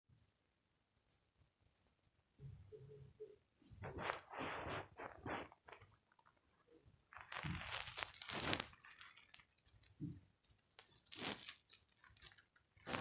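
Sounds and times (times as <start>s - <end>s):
crunching crinkling noise: 3.7s - 13.0s.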